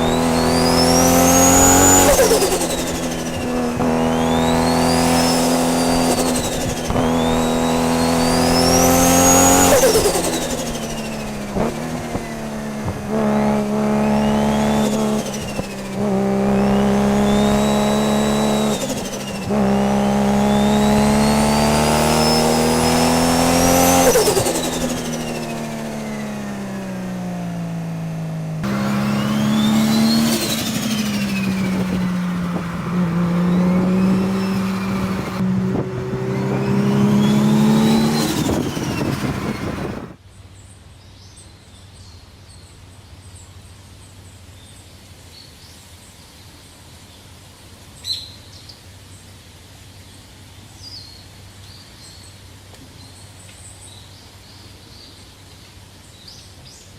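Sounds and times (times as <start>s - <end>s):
car engine running and pulling: 0.0s - 40.2s
high turbo whistle: 28.6s - 40.2s.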